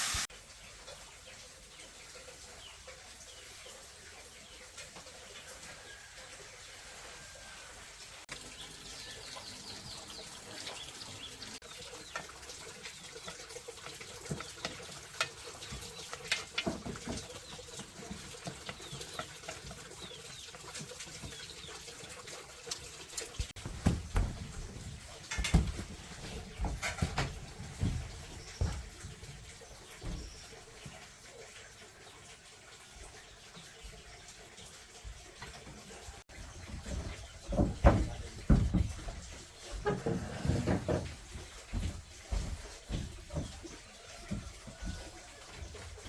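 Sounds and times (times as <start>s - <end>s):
small birds chirping: 7.9s - 46.0s
chickens: 35.9s - 46.0s.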